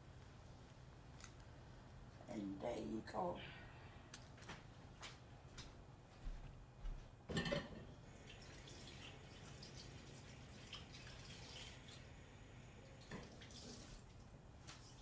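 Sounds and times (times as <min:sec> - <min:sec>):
liquid dripping: 0:08.2 - 0:12.1.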